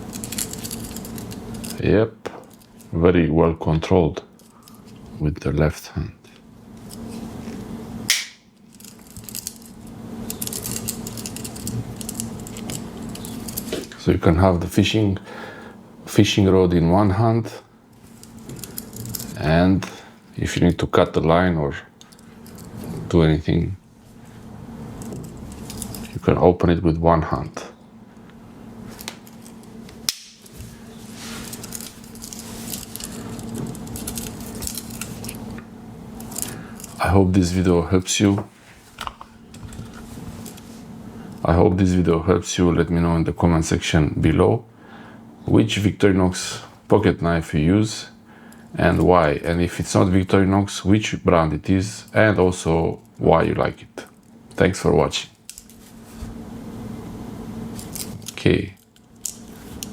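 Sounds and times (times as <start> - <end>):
knife blade snapping shut: 8.1 - 8.5, 30.1 - 30.4.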